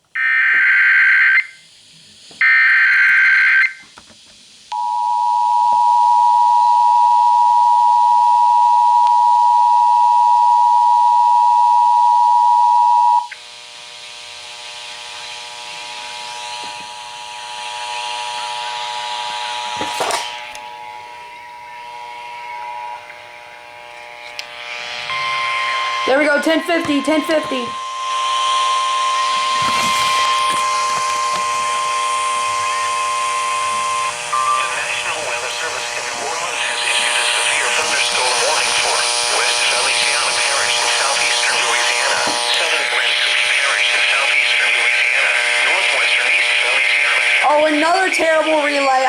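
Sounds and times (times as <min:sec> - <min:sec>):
buzzing hum with hiss: 0:13.2 - 0:49.0
screeching data bursts: 0:25.0 - 0:43.5
two-tone attention signal: 0:25.1 - 0:34.8.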